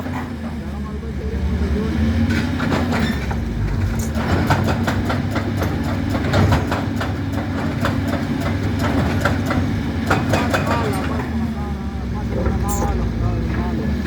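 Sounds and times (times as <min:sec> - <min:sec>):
excavator diesel engine running: 0:00.0 - 0:14.0
metallic knocks and clatter: 0:02.4 - 0:11.3.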